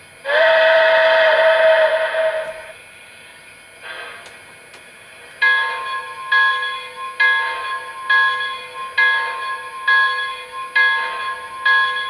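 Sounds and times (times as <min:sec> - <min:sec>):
steam locomotive whistle: 0:00.2 - 0:02.8
locomotive bell ringing: 0:05.4 - 0:12.0.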